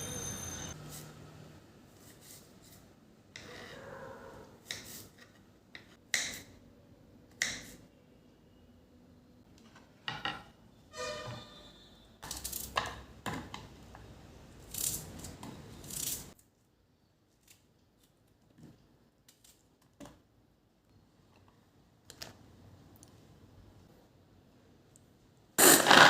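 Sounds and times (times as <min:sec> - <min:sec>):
squeaky scrape: 0:10.9 - 0:12.0.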